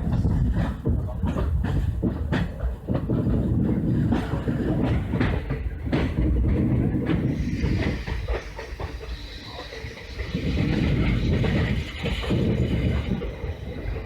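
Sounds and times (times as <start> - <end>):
train rumbling: 0.0 - 14.0
wheels clattering over rail joints: 0.0 - 14.0.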